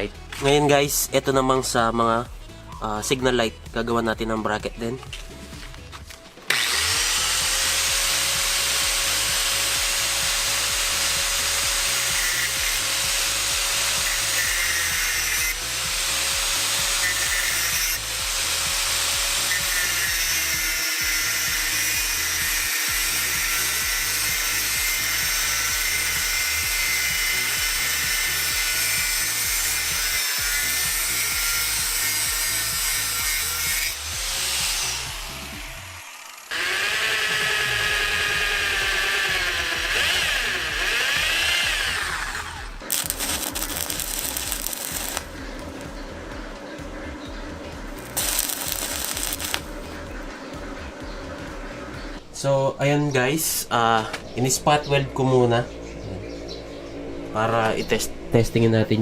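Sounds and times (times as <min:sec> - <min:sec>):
background music: 0:00.0 - 0:59.0
power tool grinding steel: 0:06.5 - 0:45.9, 0:47.9 - 0:50.2.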